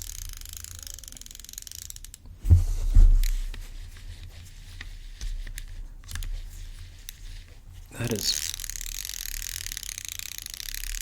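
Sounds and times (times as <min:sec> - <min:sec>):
fishing reel drag clicking: 0:00.0 - 0:02.3, 0:08.0 - 0:11.0
thumps of reel being handled: 0:01.2 - 0:07.6.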